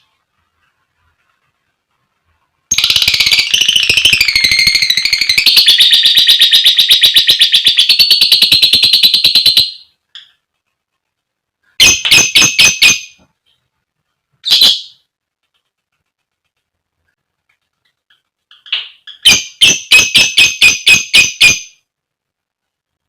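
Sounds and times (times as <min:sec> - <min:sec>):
shrill bird chirps: 0:02.7 - 0:10.3, 0:11.8 - 0:13.2, 0:14.4 - 0:15.1, 0:18.6 - 0:21.9.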